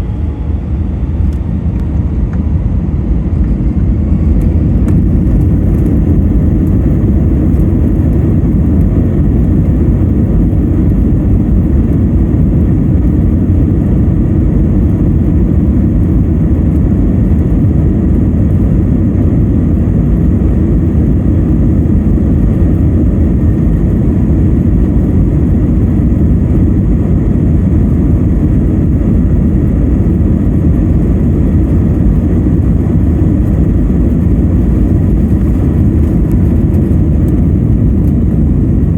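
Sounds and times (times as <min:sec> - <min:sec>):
jet engine rumble in cabin: 0:00.0 - 0:38.9.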